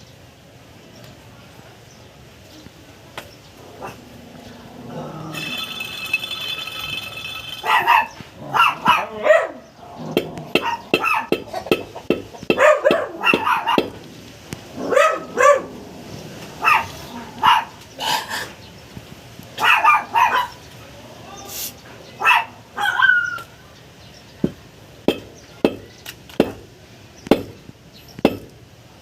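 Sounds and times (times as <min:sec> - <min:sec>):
dog barking: 0:07.6 - 0:09.6, 0:10.6 - 0:11.4, 0:12.5 - 0:14.0, 0:14.8 - 0:15.8, 0:16.6 - 0:17.8, 0:19.6 - 0:20.6, 0:22.2 - 0:23.4.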